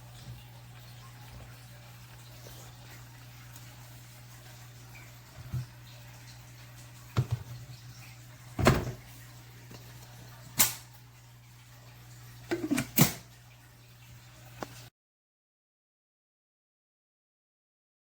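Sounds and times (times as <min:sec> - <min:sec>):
sharp clunks and knocks: 0:08.6 - 0:09.0.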